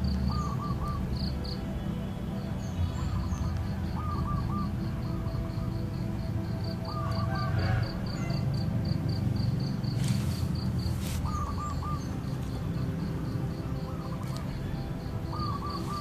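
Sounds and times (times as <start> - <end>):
insect chirping: 0.0 - 16.0
steady low rumble: 0.0 - 16.0
bird call: 0.2 - 1.4, 2.8 - 4.8, 10.0 - 12.6, 13.9 - 16.0.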